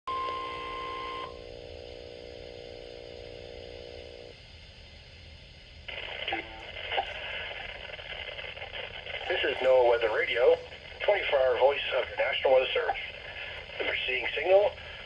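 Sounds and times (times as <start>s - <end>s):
low multi-tone buzz: 0.1s - 15.0s
announcer speaking over radio: 9.2s - 15.0s.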